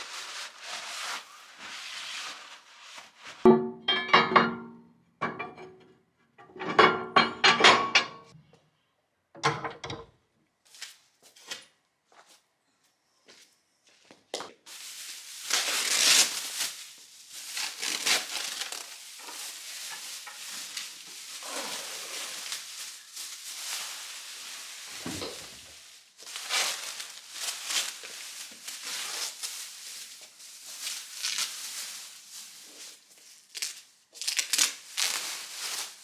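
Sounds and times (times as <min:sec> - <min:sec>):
household clinks and knocks: 0:03.5 - 0:08.4, 0:17.5 - 0:23.5, 0:24.6 - 0:25.8.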